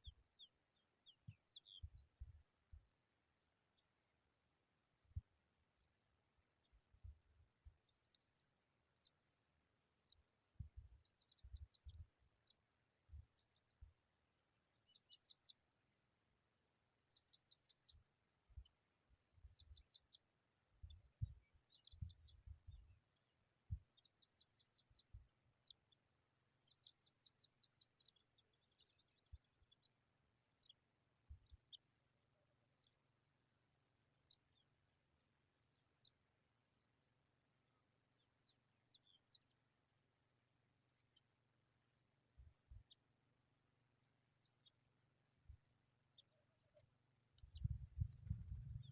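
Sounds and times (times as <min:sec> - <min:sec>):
skylark chirping: 0:00.0 - 0:02.2, 0:21.6 - 0:22.4, 0:46.1 - 0:48.9.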